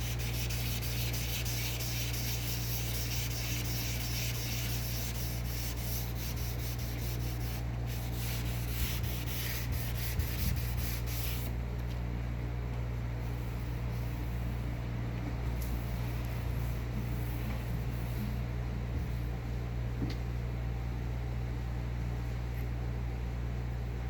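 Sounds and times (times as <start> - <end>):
sandpaper rubbing on car paint: 0.0 - 11.5.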